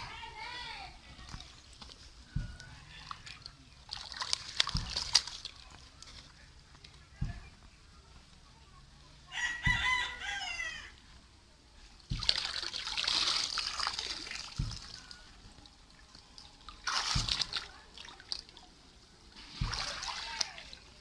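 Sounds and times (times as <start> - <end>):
water splashing and sloshing: 0.0 - 9.8, 10.9 - 21.0
rooster crowing: 9.3 - 11.0.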